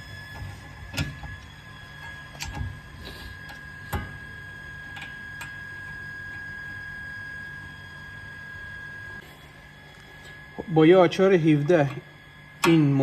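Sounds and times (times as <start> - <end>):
spanner clicking on bolts: 2.0 - 2.8, 12.6 - 13.0.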